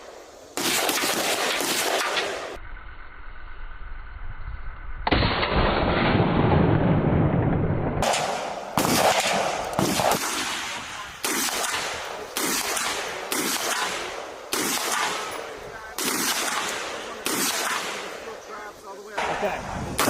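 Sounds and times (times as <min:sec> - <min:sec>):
rapid gunfire burst: 0:00.6 - 0:02.6, 0:08.0 - 0:18.4
single gunshots echoing: 0:08.0 - 0:18.4.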